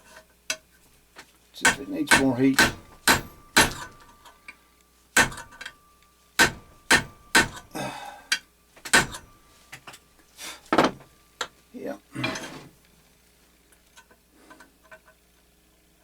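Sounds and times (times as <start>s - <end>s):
small hammer tapping metal: 1.6s - 4.4s, 5.2s - 5.8s, 6.4s - 10.0s.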